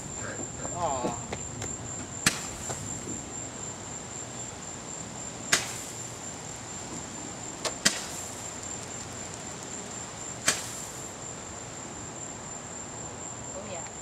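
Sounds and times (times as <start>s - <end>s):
crickets chirring: 0.0s - 14.0s
sharp firework bangs: 2.2s - 3.2s, 5.4s - 6.1s, 7.6s - 8.5s, 10.4s - 11.1s.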